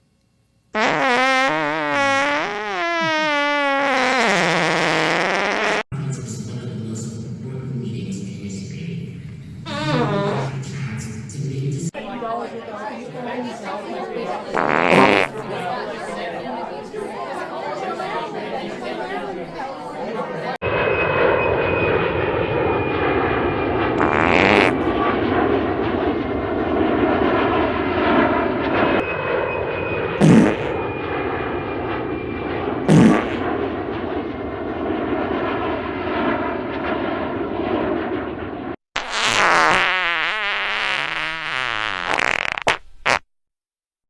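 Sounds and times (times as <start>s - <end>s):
fart sound effects: 0.8s - 5.9s, 9.7s - 10.6s, 14.5s - 15.5s, 24.0s - 24.9s, 30.2s - 30.8s, 32.9s - 33.5s, 39.0s - 43.3s.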